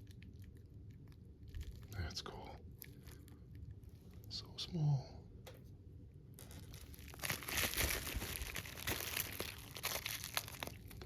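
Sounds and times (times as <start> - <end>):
packing material crinkling and tearing: 0.0 - 2.2, 2.8 - 3.8, 6.4 - 11.0.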